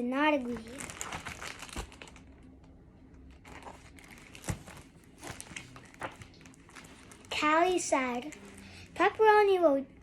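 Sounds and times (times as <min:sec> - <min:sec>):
paper pages rustling: 0:03.4 - 0:08.8.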